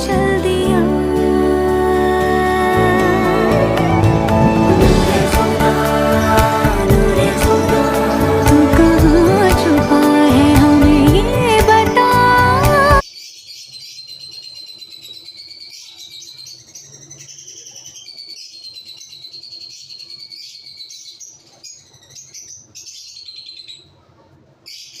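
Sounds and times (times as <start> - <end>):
music: 0.0 - 13.0
small birds chirping: 3.8 - 25.0.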